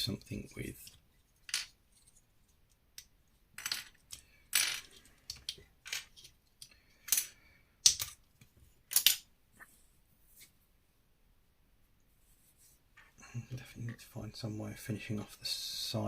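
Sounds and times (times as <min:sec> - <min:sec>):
plastic bricks clicking: 0:03.0 - 0:08.2.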